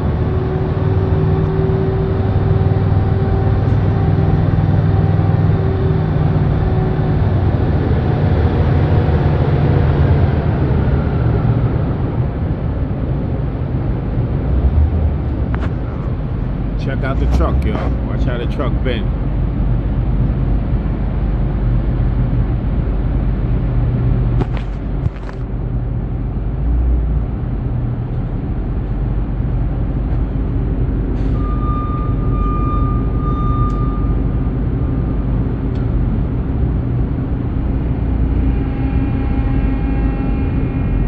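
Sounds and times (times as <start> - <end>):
diesel truck engine running: 12.0 - 32.0
high whine: 14.0 - 19.3.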